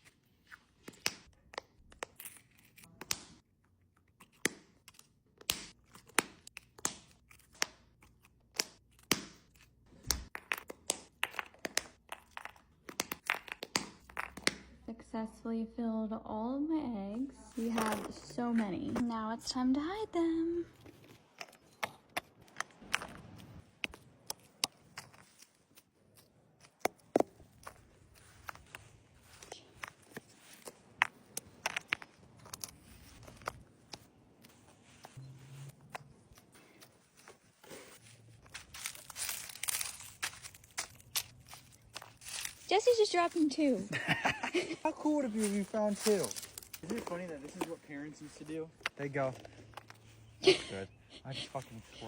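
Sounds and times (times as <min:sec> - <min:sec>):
candy wrappers crinkling: 0:20.8 - 0:43.9, 0:44.8 - 0:48.5.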